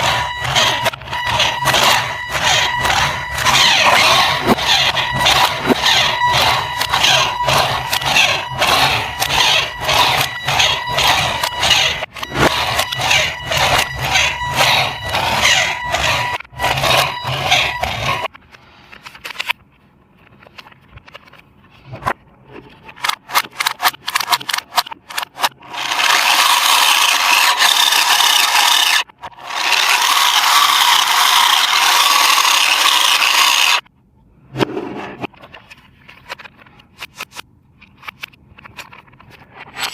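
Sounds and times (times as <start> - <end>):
packaging scraping: 0.0 - 18.3.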